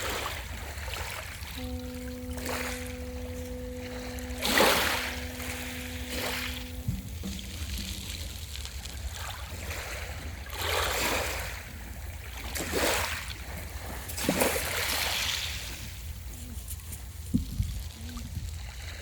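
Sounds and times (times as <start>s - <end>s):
steady low rumble: 0.0s - 10.9s.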